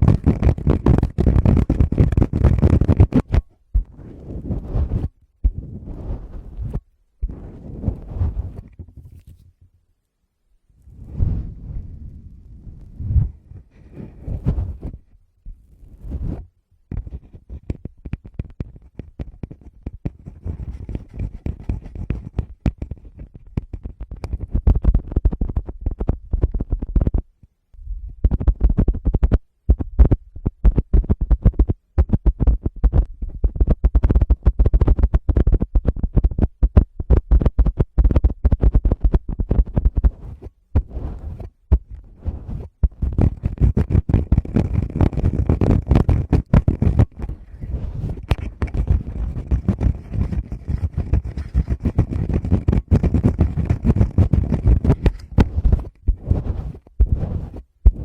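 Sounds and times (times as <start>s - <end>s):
fingers tapping on microphone: 0.0s - 3.9s, 16.9s - 27.3s, 28.2s - 47.4s, 48.1s - 58.0s.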